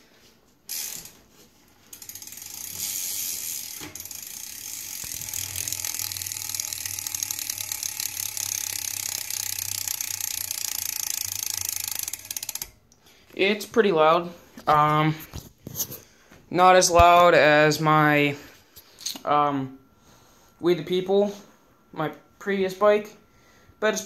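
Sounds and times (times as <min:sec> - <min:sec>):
bike freewheel hub ticking: 0:00.7 - 0:01.2, 0:01.8 - 0:12.8.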